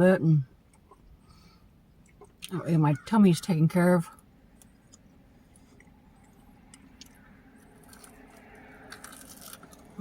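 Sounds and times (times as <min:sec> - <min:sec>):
person chewing: 0:04.6 - 0:10.0.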